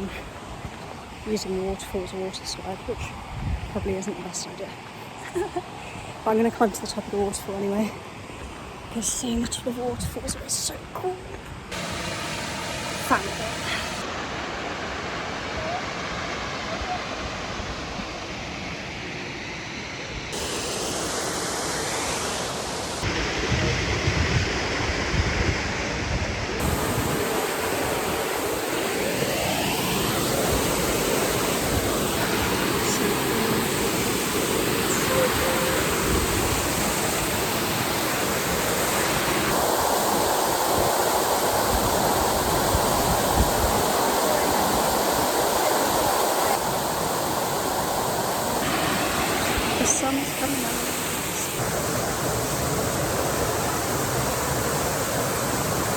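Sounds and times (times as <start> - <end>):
waterfall rushing: 11.7 - 17.8, 26.6 - 55.9.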